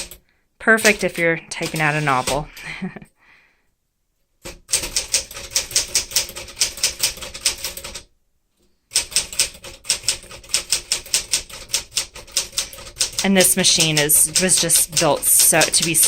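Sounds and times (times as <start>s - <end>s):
manual typewriter typing: 0.0s - 2.8s, 4.5s - 8.1s, 8.9s - 16.0s.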